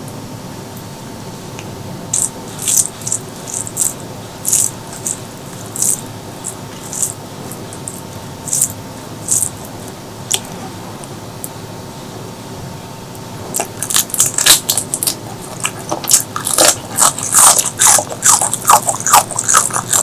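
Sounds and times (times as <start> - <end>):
wet eating smacks: 2.1 - 10.6, 13.5 - 20.0.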